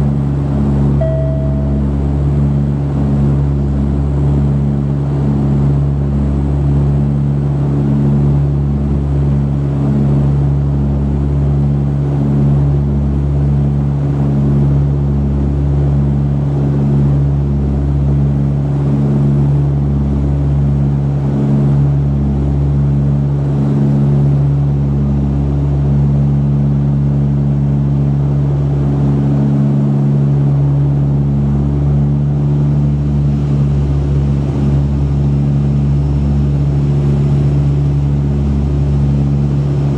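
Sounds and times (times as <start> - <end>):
turboprop cabin drone: 0.0 - 39.9.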